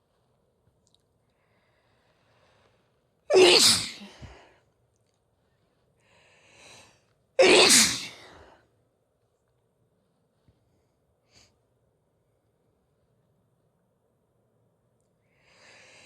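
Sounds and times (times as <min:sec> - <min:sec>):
woman sneezing: 0:03.3 - 0:04.3, 0:07.4 - 0:08.4.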